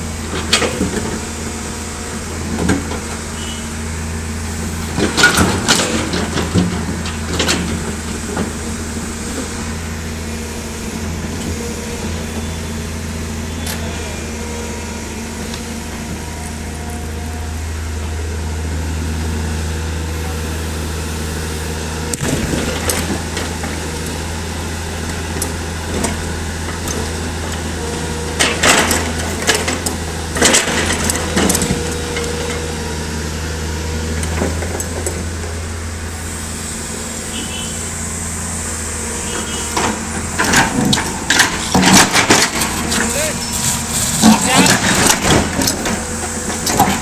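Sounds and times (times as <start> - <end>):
excavator diesel engine running: 0.0 - 47.0
bucket clanking on rock: 39.8 - 47.0.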